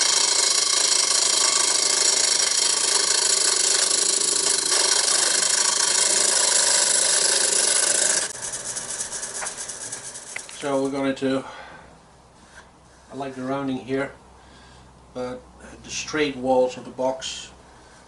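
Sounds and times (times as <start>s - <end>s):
lathe motor hum: 0.0s - 10.9s
lathe tool cutting wood: 0.0s - 10.9s.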